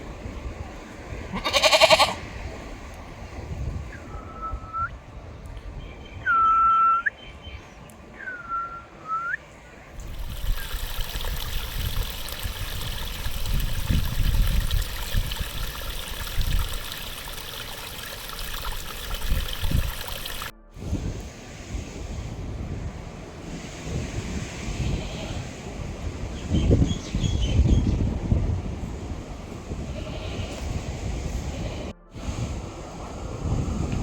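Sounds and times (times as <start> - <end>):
wind and surf rushing: 0.0 - 6.0, 9.8 - 34.0
wind gusts on microphone: 0.0 - 6.7, 9.8 - 17.5, 18.2 - 34.0
whistled calls: 3.9 - 5.0, 6.0 - 9.5.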